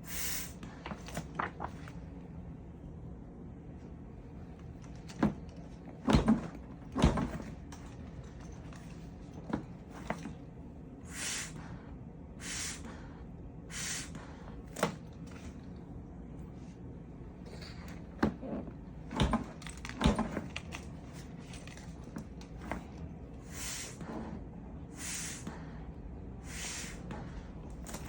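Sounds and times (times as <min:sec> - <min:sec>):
short puffs of air: 0:00.0 - 0:00.8, 0:11.1 - 0:11.7, 0:12.4 - 0:13.0, 0:13.7 - 0:14.4, 0:23.4 - 0:24.1, 0:24.9 - 0:25.7, 0:26.4 - 0:27.2.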